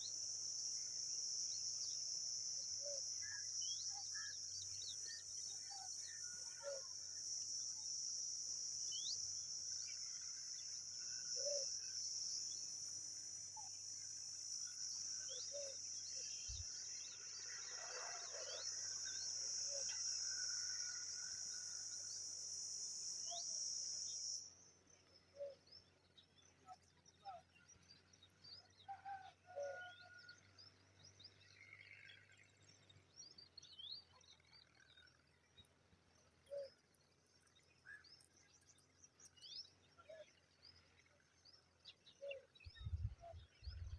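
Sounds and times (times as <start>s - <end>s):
high-pitched insect drone: 0.0s - 24.7s
bird chirps: 8.8s - 17.6s.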